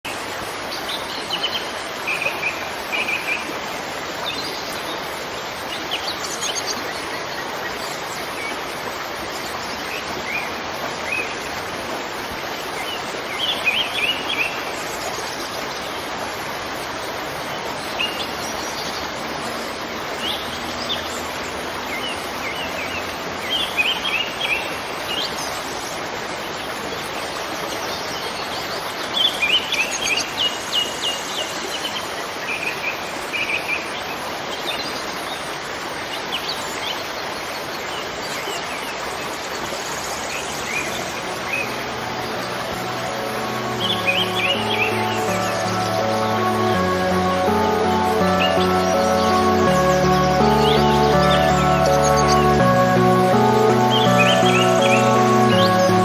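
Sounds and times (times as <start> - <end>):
waterfall rushing: 0.0 - 56.0
birds chirping: 39.6 - 56.0.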